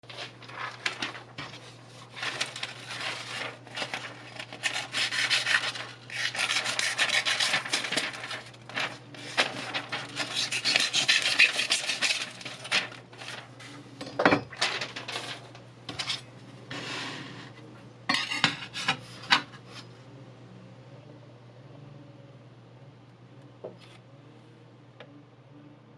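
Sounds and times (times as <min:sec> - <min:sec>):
low steady hum: 0:00.0 - 0:25.9
knife rasping on sandpaper: 0:04.6 - 0:07.8, 0:10.2 - 0:12.2.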